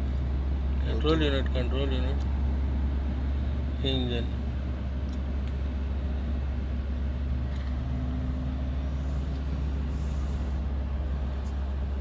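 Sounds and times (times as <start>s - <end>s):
steady low drone: 0.0s - 12.0s.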